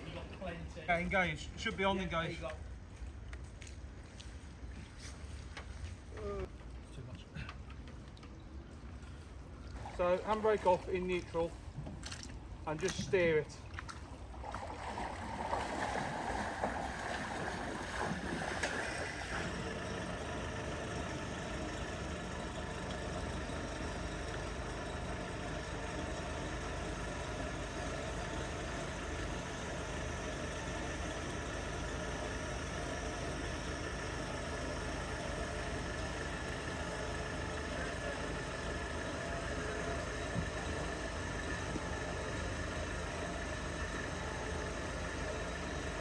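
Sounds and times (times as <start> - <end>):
rushing water: 13.6 - 19.5
vehicle engine idling: 15.5 - 46.0.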